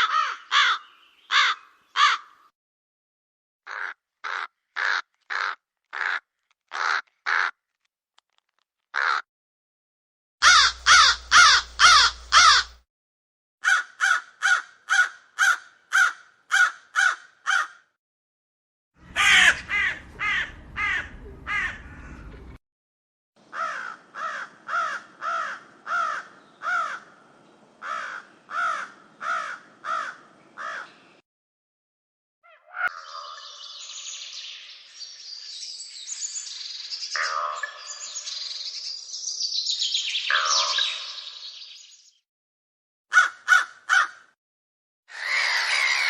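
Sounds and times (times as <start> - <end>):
crow cawing: 0.0 - 2.5, 3.7 - 7.6, 9.0 - 9.2, 10.4 - 12.8, 13.6 - 17.9, 19.1 - 22.3, 23.5 - 27.2, 27.8 - 31.0, 43.1 - 44.4, 45.1 - 46.0.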